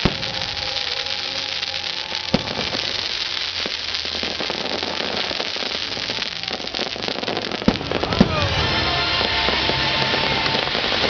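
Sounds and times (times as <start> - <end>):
fireworks crackling: 0.0 - 11.0
faint firework pops: 2.3 - 8.6
loud firework bang: 6.5 - 11.0.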